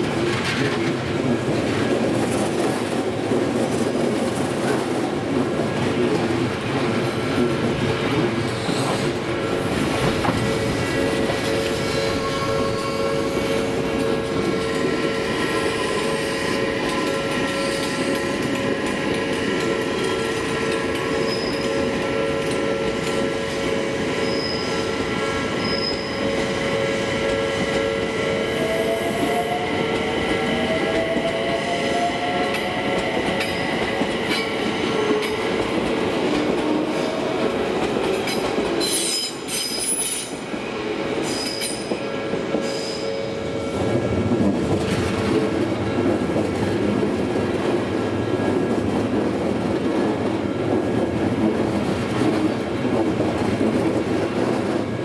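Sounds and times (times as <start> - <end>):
heavy train wheel rumble: 0.0 - 55.0
train wheels squealing: 8.5 - 35.6, 38.2 - 40.4, 41.2 - 43.3.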